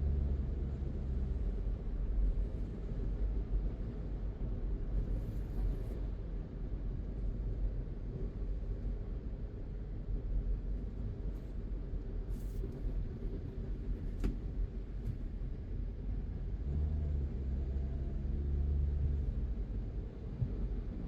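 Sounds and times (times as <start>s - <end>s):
deep engine hum: 15.6s - 21.0s.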